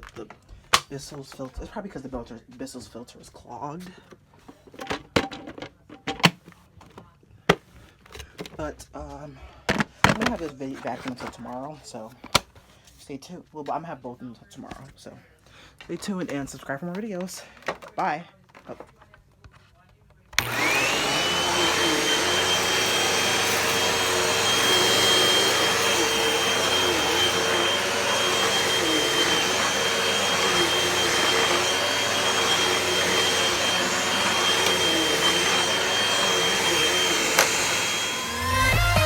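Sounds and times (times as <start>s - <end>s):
vacuum cleaner whine: 20.3s - 39.0s.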